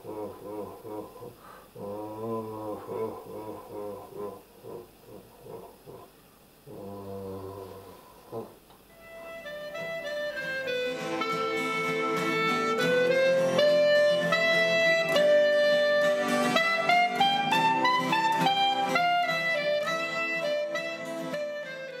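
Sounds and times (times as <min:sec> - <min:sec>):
instrumental music with beat: 0:08.9 - 0:22.0.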